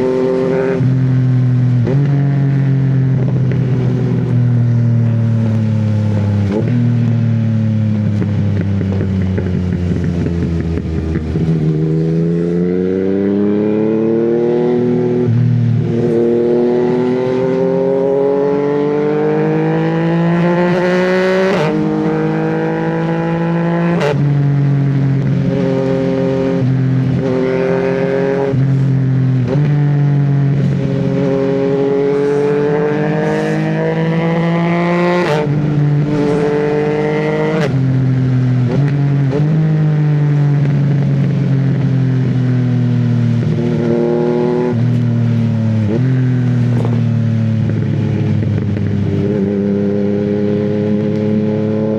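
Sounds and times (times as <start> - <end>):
motorcycle engine revving through gears: 0.0 - 51.9.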